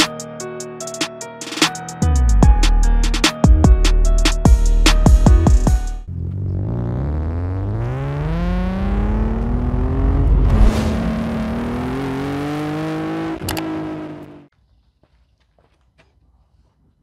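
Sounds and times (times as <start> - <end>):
car engine accelerating hard: 6.1 - 14.5.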